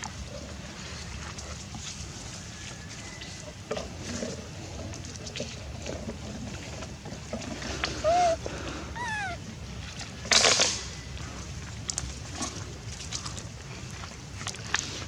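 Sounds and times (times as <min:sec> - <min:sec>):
baby monkey crying: 0:08.0 - 0:09.4.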